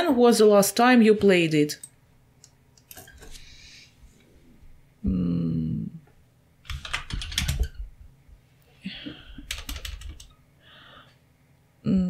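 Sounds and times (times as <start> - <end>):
person humming: 5.0 - 6.1
keyboard typing: 6.6 - 7.8, 9.4 - 10.3.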